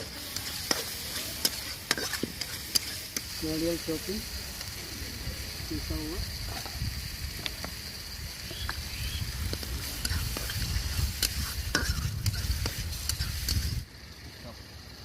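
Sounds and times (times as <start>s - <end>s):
spatula scraping a pan: 0.0s - 3.4s, 8.6s - 13.8s
paste sizzling in hot oil: 0.0s - 14.3s.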